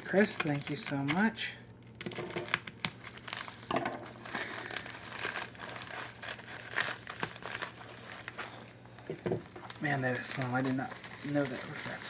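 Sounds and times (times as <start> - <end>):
wrapping tearing: 0.0 - 8.8, 9.5 - 12.0
wrapping material crinkling: 0.0 - 12.0.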